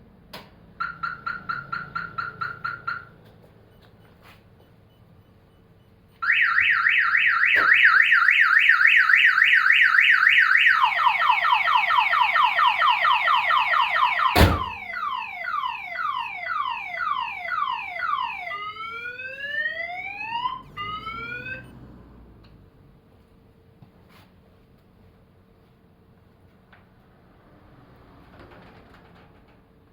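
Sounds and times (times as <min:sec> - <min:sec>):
car alarm siren warbling: 0:00.8 - 0:03.2, 0:06.2 - 0:22.5.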